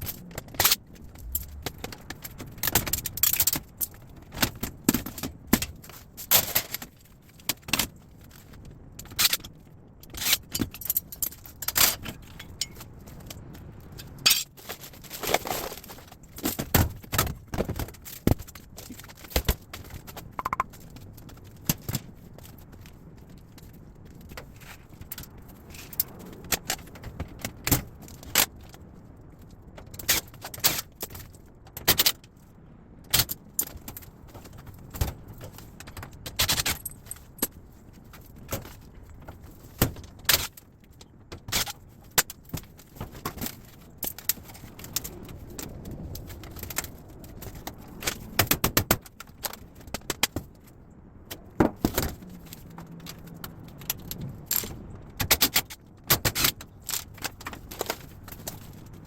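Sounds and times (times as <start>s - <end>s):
scrap metal clinking and clanking: 14.2s - 16.0s.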